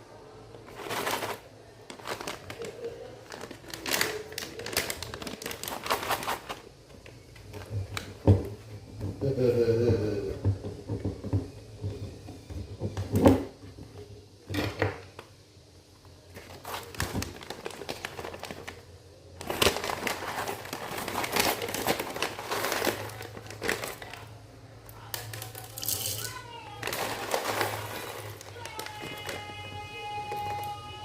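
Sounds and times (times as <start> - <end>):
packaging crinkling and crackling: 0.6 - 8.7, 16.2 - 31.0.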